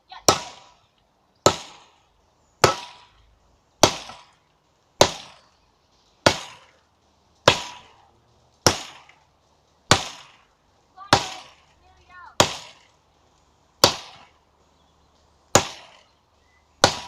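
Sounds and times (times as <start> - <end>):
axe chopping tree trunk: 1.4 - 1.9, 2.6 - 3.1, 3.8 - 4.4, 5.0 - 5.4, 6.2 - 6.7, 7.4 - 7.9, 8.6 - 9.2, 9.9 - 10.4, 12.4 - 12.9, 13.8 - 14.3, 15.5 - 16.1, 16.8 - 17.0.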